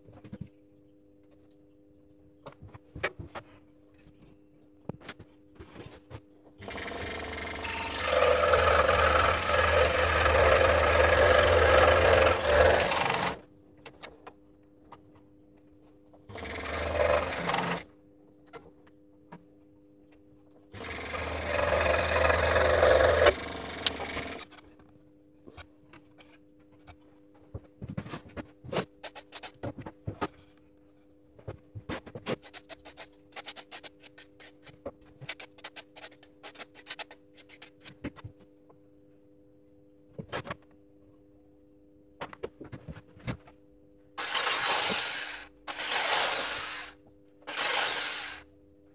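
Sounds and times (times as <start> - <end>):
power tool working wood: 6.6 - 13.4, 16.3 - 17.8, 20.8 - 24.4, 44.2 - 48.4.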